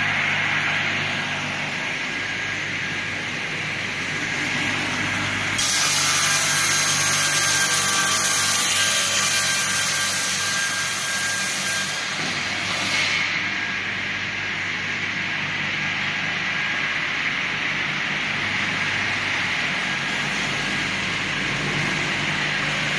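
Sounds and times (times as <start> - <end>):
saw blade cutting log: 5.6 - 13.2.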